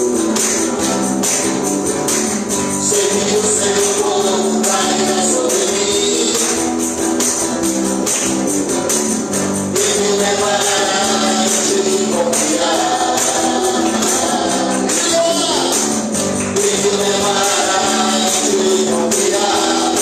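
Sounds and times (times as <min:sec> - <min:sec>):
church band playing gospel: 0:00.0 - 0:20.0
tambourine rhythm: 0:00.0 - 0:20.0
singing: 0:02.8 - 0:06.7, 0:09.8 - 0:20.0.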